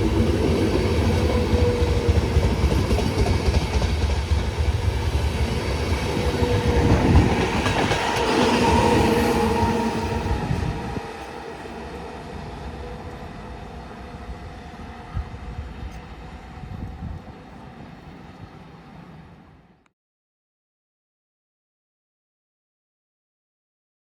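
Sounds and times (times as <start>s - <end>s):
train wheels clattering over rails: 0.0s - 9.8s.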